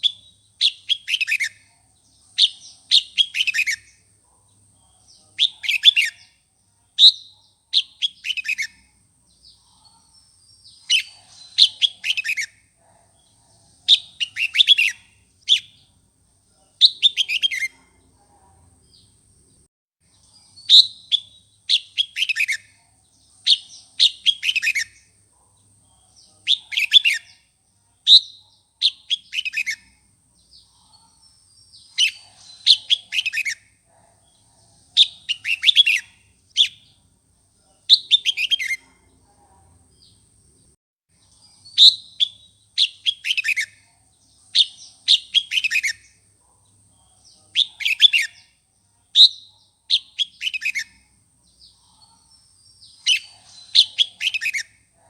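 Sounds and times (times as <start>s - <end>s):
bird singing whistled notes: 0.0s - 1.7s, 2.3s - 4.0s, 4.8s - 6.4s, 7.0s - 8.9s, 10.6s - 12.6s, 13.9s - 15.8s, 16.8s - 17.7s, 20.3s - 22.8s, 23.4s - 25.1s, 26.4s - 27.4s, 28.1s - 30.0s, 35.0s - 36.9s, 37.9s - 38.8s, 41.4s - 43.8s, 44.5s - 46.2s, 47.4s - 48.6s, 49.2s - 51.1s, 52.7s - 54.8s.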